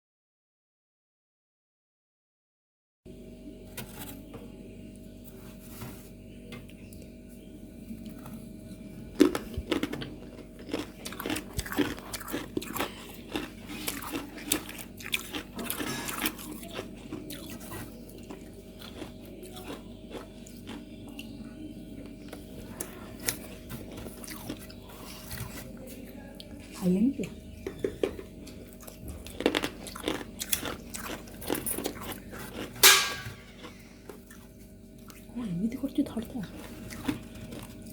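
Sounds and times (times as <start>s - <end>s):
frost crunching being chewed: 7.8s - 26.8s, 27.5s - 37.9s.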